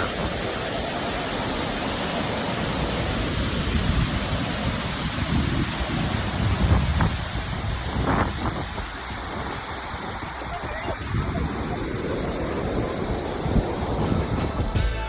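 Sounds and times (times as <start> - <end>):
wind buffeting microphone: 0.0 - 14.8
waterfall rushing: 0.0 - 15.0.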